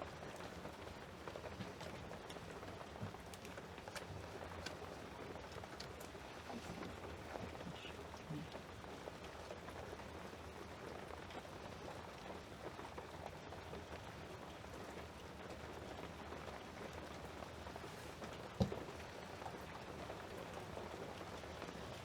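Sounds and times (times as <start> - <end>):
heavy rain heard from indoors: 0.0 - 22.0
small drips: 0.1 - 9.9.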